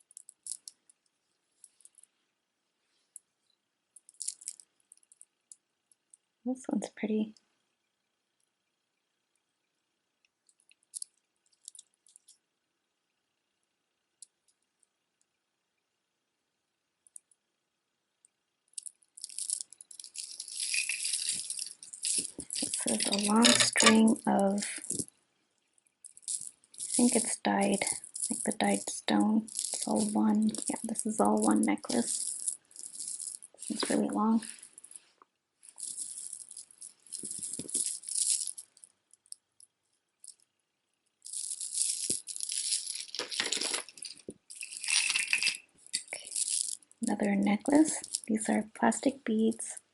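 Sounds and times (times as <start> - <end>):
stone beads rattling: 0.0 - 0.9, 4.0 - 5.3, 10.5 - 12.4, 18.8 - 25.2, 26.0 - 39.5, 40.2 - 40.4, 41.2 - 47.2, 47.8 - 48.4.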